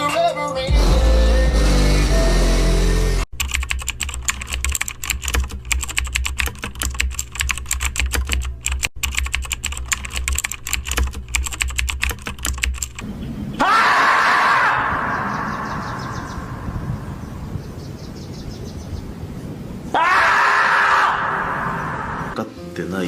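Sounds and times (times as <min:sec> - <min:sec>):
music: 0:00.0 - 0:03.2, 0:22.4 - 0:23.0
computer keyboard typing: 0:03.3 - 0:13.0.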